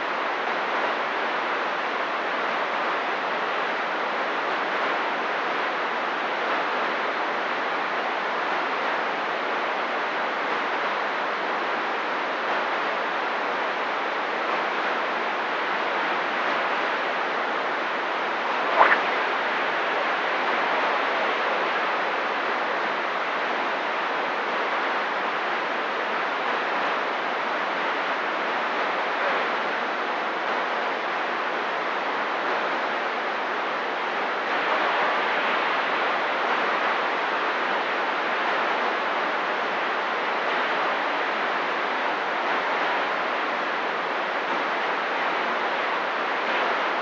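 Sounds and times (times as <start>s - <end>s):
radio static hiss: 18.4s - 20.6s
short radio blip: 18.6s - 19.3s.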